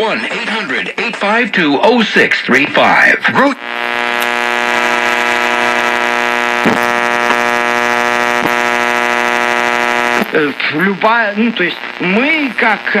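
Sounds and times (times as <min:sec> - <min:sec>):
car radio static buzz: 0:03.3 - 0:13.0.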